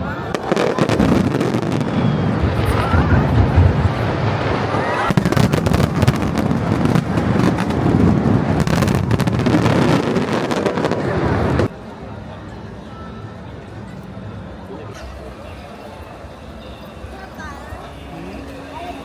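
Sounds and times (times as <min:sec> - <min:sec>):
fireworks bangs and crackles: 0:00.0 - 0:11.7
faint crowd voices: 0:00.0 - 0:19.0.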